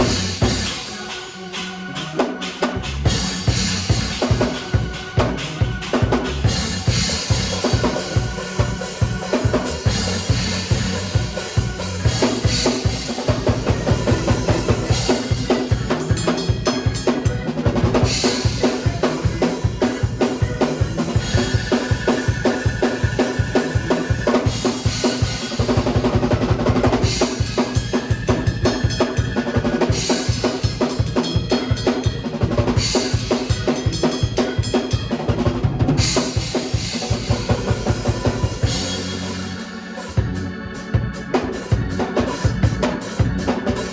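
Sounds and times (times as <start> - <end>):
held instrument notes: 0.0 - 43.9.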